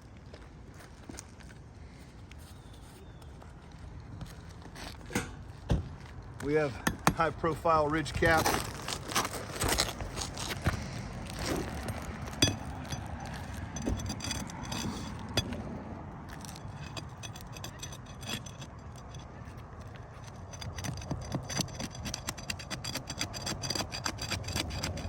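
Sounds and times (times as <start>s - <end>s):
roof cap scraping: 6.4s - 25.0s.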